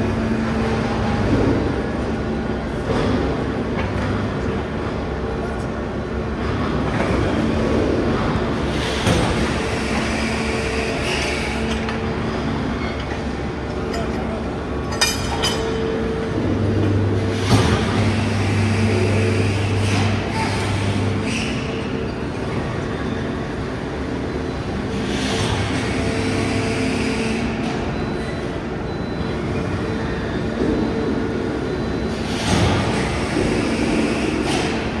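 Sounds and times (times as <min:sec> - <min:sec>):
forging press humming: 0:08.4 - 0:21.2.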